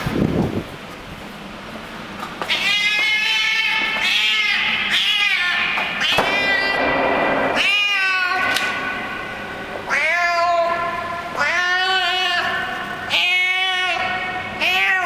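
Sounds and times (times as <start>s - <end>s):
cat meowing while eating: 2.5s - 6.8s, 7.4s - 9.0s, 9.9s - 15.0s.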